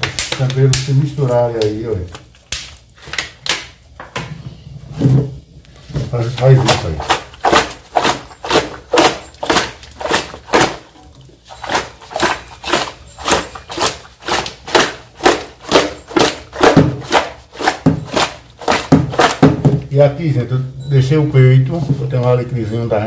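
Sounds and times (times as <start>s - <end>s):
hands squelching raw chicken: 6.2s - 19.6s.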